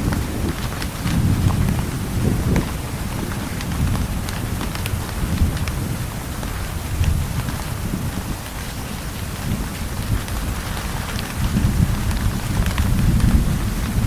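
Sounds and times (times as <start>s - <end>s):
distant thunder rumble: 0.0s - 7.7s
steady heavy rain: 0.0s - 14.0s.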